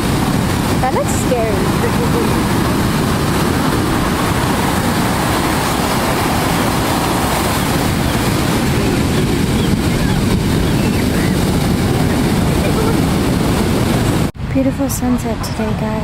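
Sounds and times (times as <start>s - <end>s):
ocean surf: 0.0s - 14.6s
wind: 0.0s - 16.0s.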